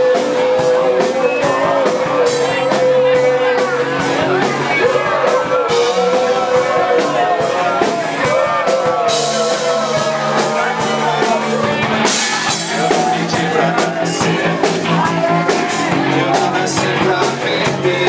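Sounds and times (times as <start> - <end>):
person singing: 0.0 - 18.0
rock band playing: 0.0 - 18.0.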